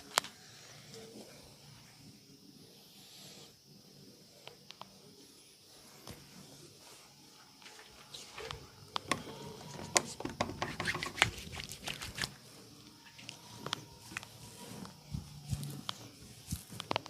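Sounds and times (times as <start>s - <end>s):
hands slapping on skin: 10.7s - 12.4s.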